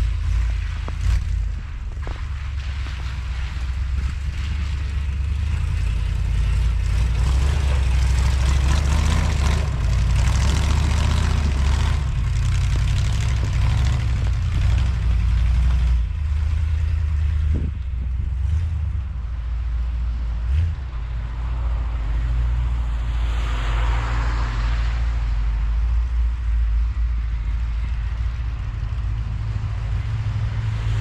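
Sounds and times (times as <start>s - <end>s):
truck engine running under load: 0.0s - 22.8s, 25.3s - 31.0s
steady rushing noise: 0.0s - 31.0s.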